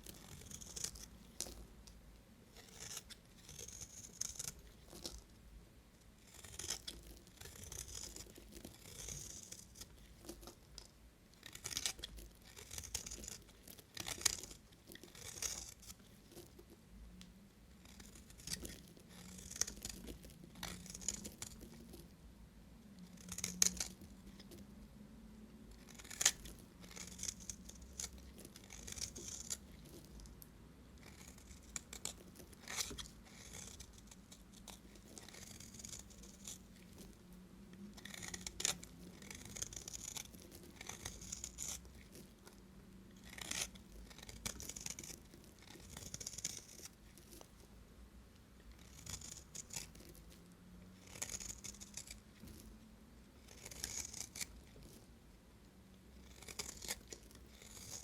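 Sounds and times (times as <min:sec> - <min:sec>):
knife slicing through soap: 0:02.6 - 0:05.2, 0:06.3 - 0:09.6, 0:11.4 - 0:15.8, 0:31.0 - 0:36.6, 0:38.0 - 0:41.8, 0:43.2 - 0:46.9, 0:51.0 - 0:52.2.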